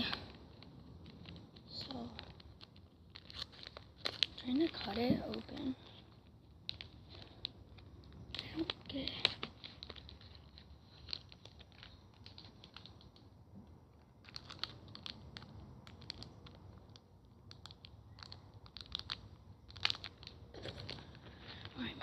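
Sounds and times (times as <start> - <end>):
scissors cutting plastic: 0.0 - 5.7, 8.2 - 13.2.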